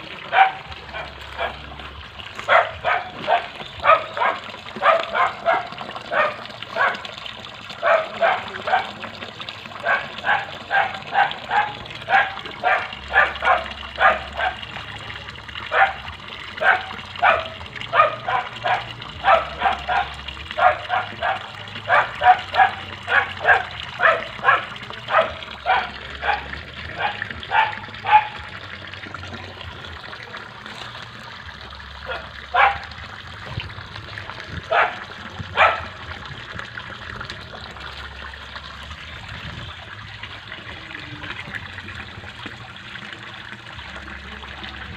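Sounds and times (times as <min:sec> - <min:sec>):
running water: 0:00.0 - 0:44.9
dog barking: 0:00.3 - 0:01.7, 0:02.4 - 0:07.1, 0:07.8 - 0:09.1, 0:09.8 - 0:14.8, 0:15.7 - 0:28.6, 0:32.0 - 0:32.9, 0:34.7 - 0:36.1.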